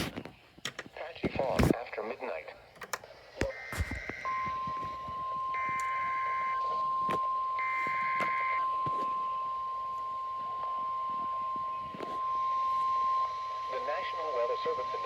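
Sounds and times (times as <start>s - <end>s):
steady warning alarm tone: 3.4s - 15.0s.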